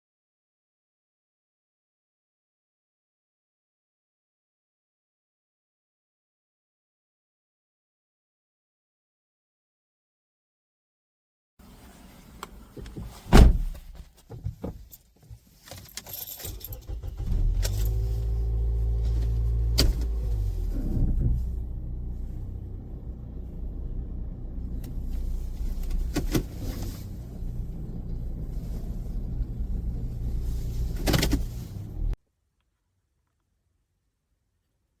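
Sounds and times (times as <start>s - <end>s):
keys jingling and clicks: 15.7s - 16.8s
car engine running: 17.2s - 32.2s.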